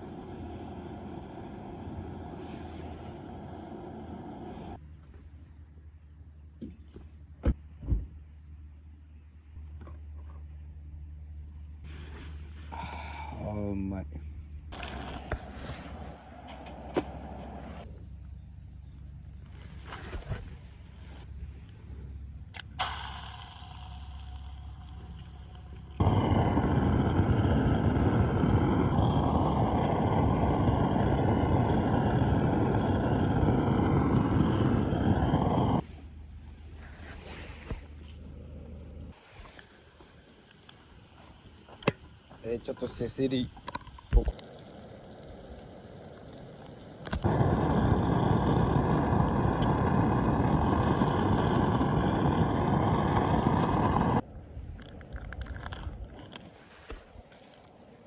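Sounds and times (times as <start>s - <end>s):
rushing wind: 0.0s - 4.8s, 25.1s - 36.0s, 44.2s - 57.4s
small outboard engine running: 22.8s - 35.8s, 45.6s - 54.2s
water noise: 38.6s - 58.0s.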